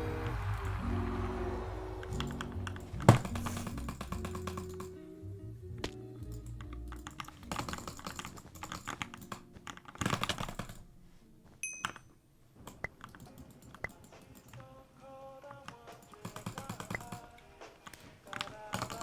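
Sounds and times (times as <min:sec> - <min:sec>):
mechanical keyboard typing: 0:02.2 - 0:05.0, 0:06.3 - 0:10.8, 0:12.7 - 0:14.8, 0:15.5 - 0:19.0.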